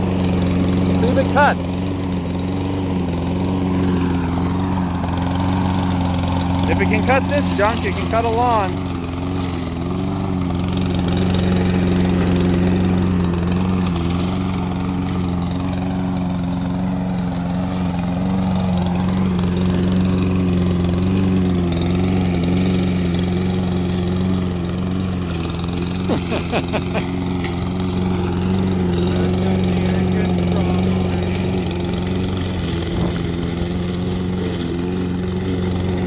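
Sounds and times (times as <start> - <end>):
lawn mower engine running: 0.0 - 36.0.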